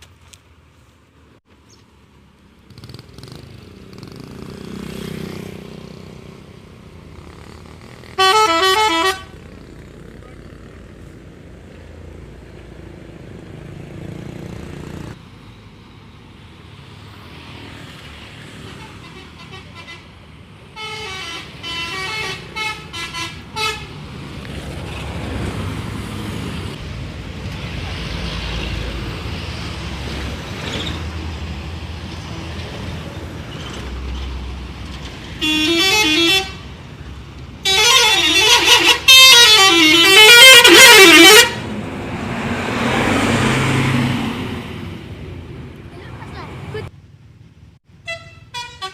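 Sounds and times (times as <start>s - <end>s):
road traffic: 0.0s - 48.9s
musical bus air horns: 8.1s - 9.4s, 18.7s - 20.1s, 20.7s - 24.0s, 35.4s - 36.7s, 37.6s - 41.7s, 48.0s - 48.9s.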